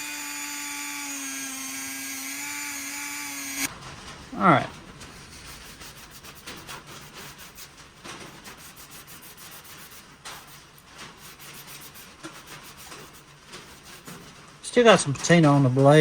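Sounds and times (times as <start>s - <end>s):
knife blade being rubbed: 5.3s - 14.4s.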